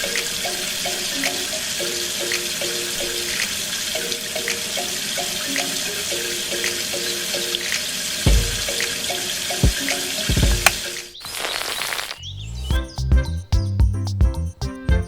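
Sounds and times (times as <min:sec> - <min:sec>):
light background music: 0:00.0 - 0:11.2, 0:12.7 - 0:15.0
running water: 0:00.0 - 0:12.2
low thumps: 0:08.3 - 0:08.7.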